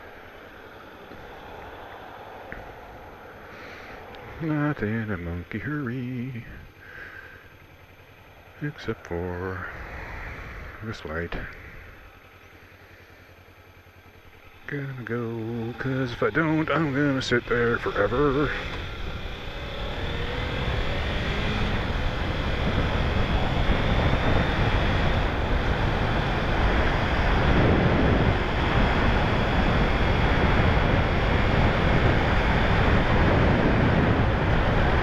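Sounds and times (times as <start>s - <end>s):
motorcycle engine accelerating: 0.0s - 35.0s
wind rush over microphone: 9.5s - 12.0s, 16.6s - 35.0s.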